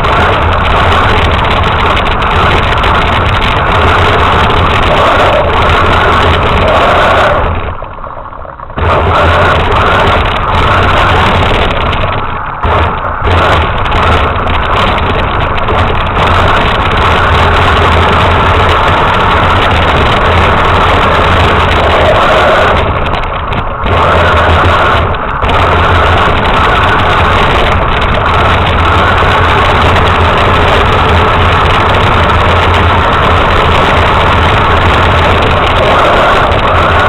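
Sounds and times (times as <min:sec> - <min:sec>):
toy truck motor running: 0:00.0 - 0:07.8, 0:08.8 - 0:37.0.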